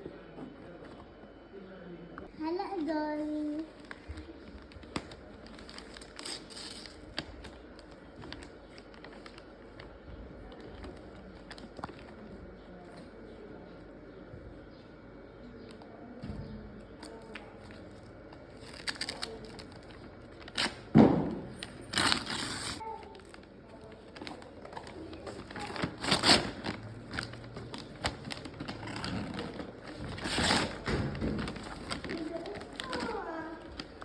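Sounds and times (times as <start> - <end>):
paper and plastic crinkling: 2.4 - 12.9, 17.0 - 20.9, 21.5 - 34.0.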